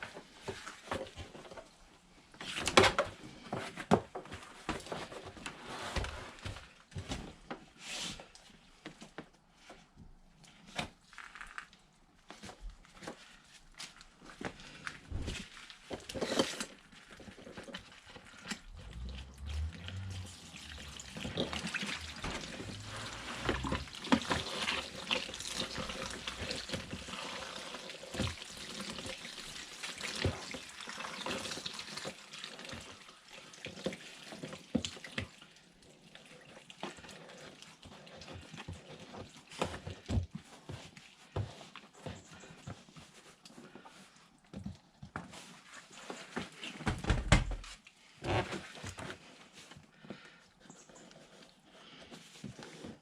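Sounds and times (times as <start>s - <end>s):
water running and splashing: 18.8s - 38.6s.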